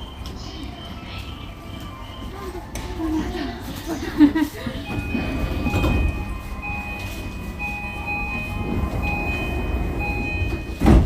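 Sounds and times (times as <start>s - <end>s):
low rumble of train: 0.0s - 11.0s.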